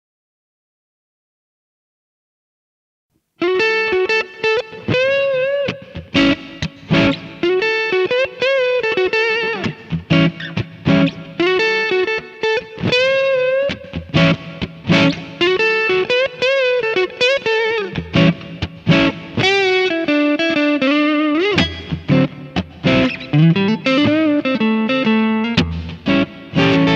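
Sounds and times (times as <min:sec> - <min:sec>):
overdriven electric guitar blues licks: 0:03.4 - 0:26.9
strummed guitar chord stabs: 0:03.4 - 0:26.9.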